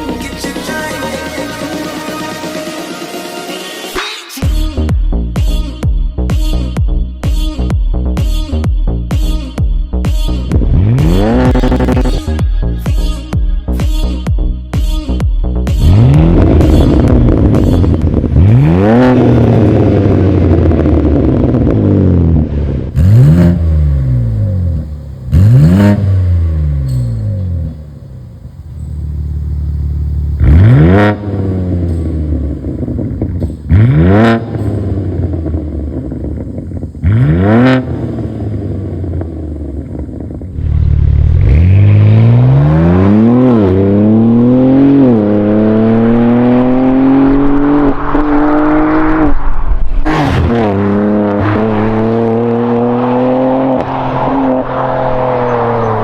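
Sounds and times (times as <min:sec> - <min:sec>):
car engine revving: 0:10.4 - 0:12.3, 0:15.7 - 0:56.0
exhaust crack: 0:10.5 - 0:12.3, 0:15.7 - 0:56.0.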